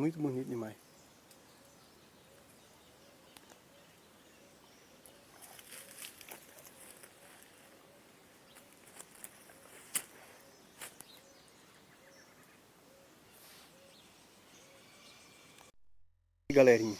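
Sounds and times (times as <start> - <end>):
distant bird calling: 0.0 - 15.7
rustling and crackling: 5.3 - 7.7, 8.5 - 11.2.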